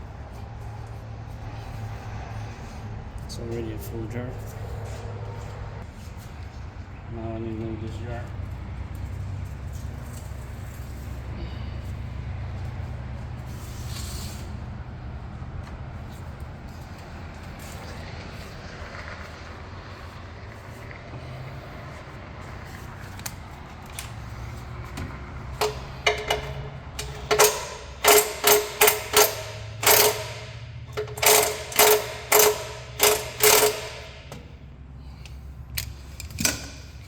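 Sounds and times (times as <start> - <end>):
ratchet wrench clicking: 25.5 - 34.5.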